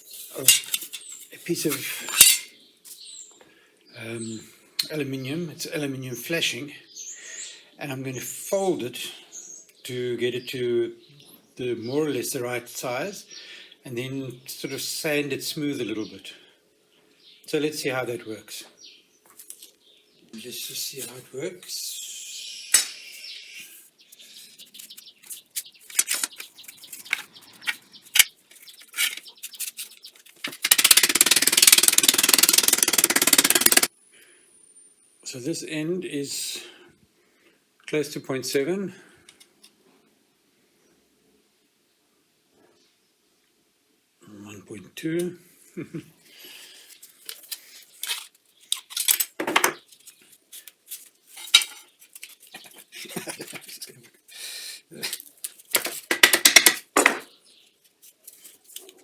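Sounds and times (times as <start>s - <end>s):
metal flashing clinking and scraping: 0.0s - 3.0s, 24.6s - 33.9s, 47.1s - 52.6s
metal sheet crinkling: 24.6s - 33.9s, 47.0s - 53.9s
power sander buzzing: 30.5s - 33.9s.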